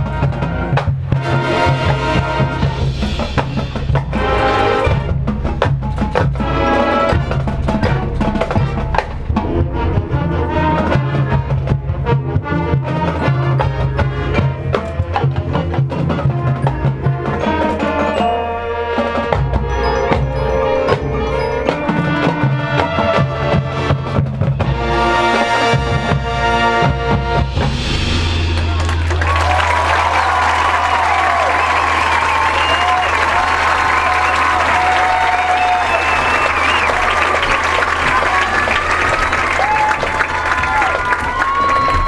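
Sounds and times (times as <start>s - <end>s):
drumline with bass drum: 0.0s - 42.0s
marching band playing: 0.0s - 42.0s.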